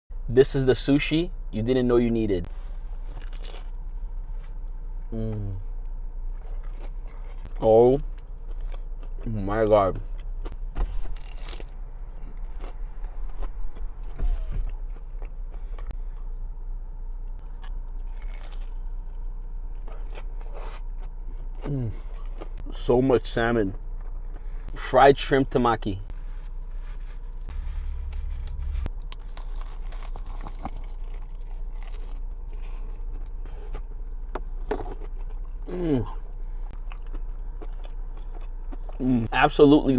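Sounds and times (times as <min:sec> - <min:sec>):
person chewing crunchy food: 0:02.8 - 0:03.8, 0:06.3 - 0:16.3, 0:17.4 - 0:22.7, 0:27.4 - 0:39.0.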